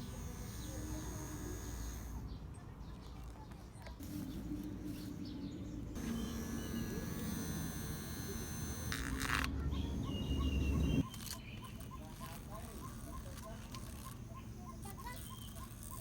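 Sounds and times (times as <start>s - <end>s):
small electric motor buzzing: 0.0s - 2.2s, 6.0s - 16.0s.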